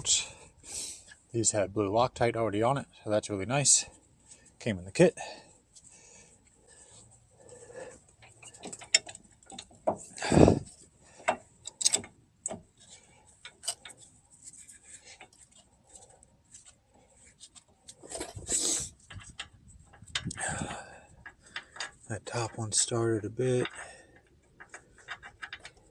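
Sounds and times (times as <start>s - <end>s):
metallic clicks of hand tools: 11.3s - 12.6s.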